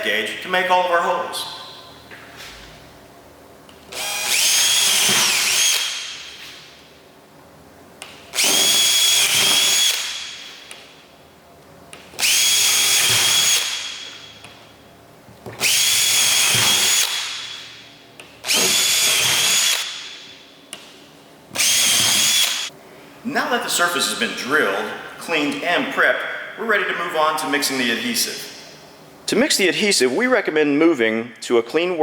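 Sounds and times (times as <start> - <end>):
power drill whining: 3.9 - 6.2, 8.3 - 10.3, 12.2 - 14.1, 15.6 - 17.4, 18.4 - 19.9, 21.6 - 22.7.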